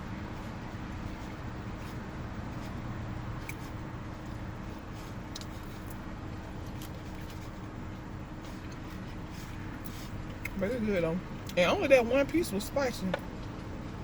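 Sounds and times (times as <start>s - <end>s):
low background hum: 0.0s - 14.0s
chewing smacks: 5.0s - 7.6s.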